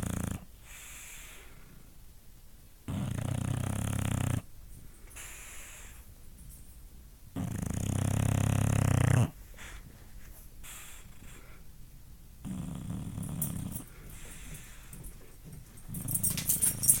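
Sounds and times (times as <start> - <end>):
dog snoring: 0.0 - 1.6, 2.8 - 4.5, 7.3 - 9.8, 12.4 - 15.1
dog breathing quietly: 0.0 - 2.0, 2.9 - 6.2, 7.4 - 11.8, 12.4 - 17.0.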